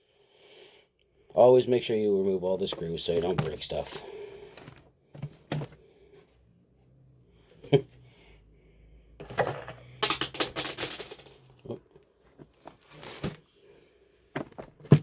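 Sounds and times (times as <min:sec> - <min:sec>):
plastic being handled: 0:02.5 - 0:05.8.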